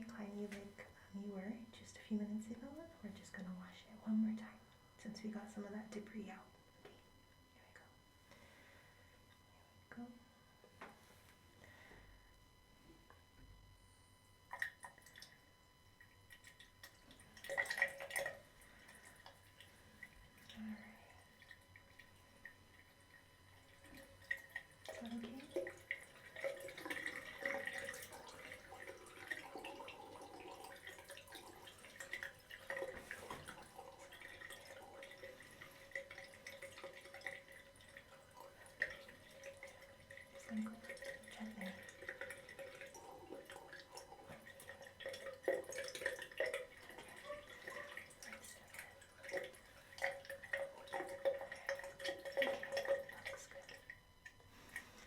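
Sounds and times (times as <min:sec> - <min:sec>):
water trickling and dripping: 0:14.3 - 0:55.0.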